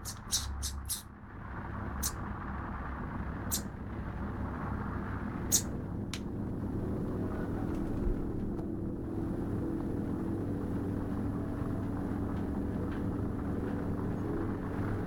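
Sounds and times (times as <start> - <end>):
sharp high-pitched clicks: 0.0 - 1.0
low background rumble: 0.0 - 15.0.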